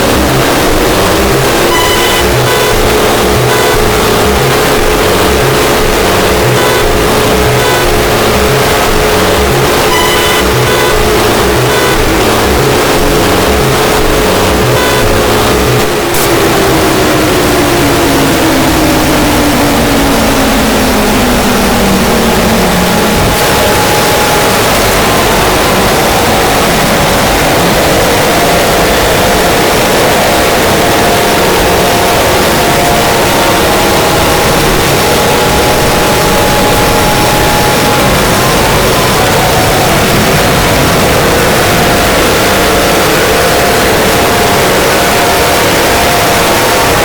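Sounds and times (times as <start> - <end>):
harsh static: 0.0 - 47.0
low tone sliding downward: 0.0 - 47.0
faint high tone: 0.2 - 18.8.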